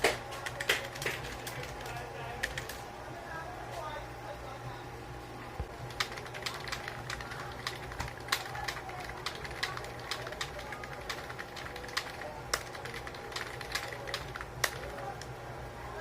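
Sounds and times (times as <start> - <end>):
fast keyboard typing: 0.0 - 2.8, 5.8 - 15.2
faint steady hum: 0.0 - 16.0.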